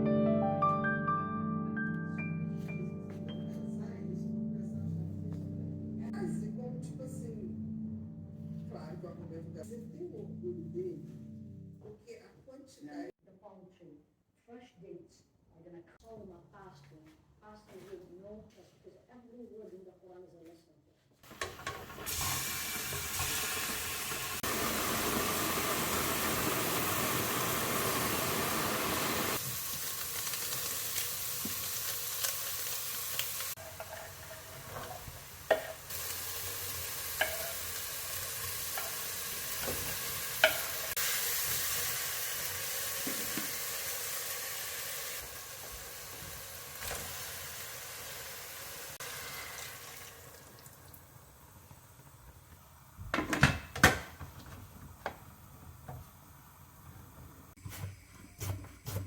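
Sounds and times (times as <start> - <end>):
food sizzling in a frying pan: 21.2 - 52.2
utensil clinking against pan: 37.2 - 37.6.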